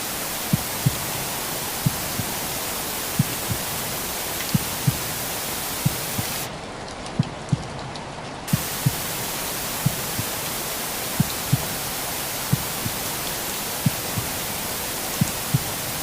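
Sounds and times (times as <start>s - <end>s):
rain hiss white noise: 0.0s - 16.0s
recorded heartbeat thumps: 0.4s - 2.5s, 3.1s - 3.8s, 4.4s - 6.5s, 7.1s - 7.7s, 8.5s - 10.4s, 11.1s - 11.8s, 12.4s - 13.0s, 13.8s - 14.5s, 15.2s - 16.0s.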